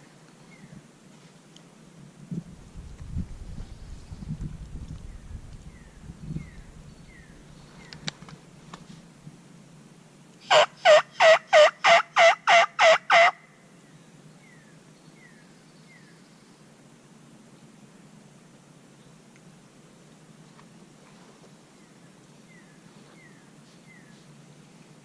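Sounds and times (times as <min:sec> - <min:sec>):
small birds chirping: 0:03.4 - 0:08.3
turkey yelping: 0:10.5 - 0:13.4.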